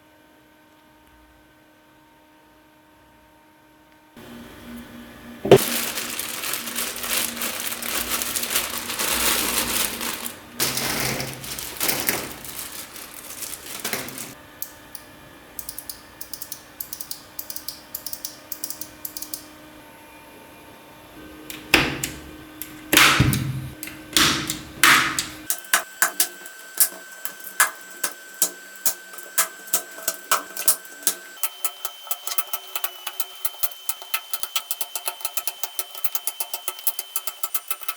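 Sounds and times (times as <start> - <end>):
mechanical keyboard typing: 15.6 - 19.4.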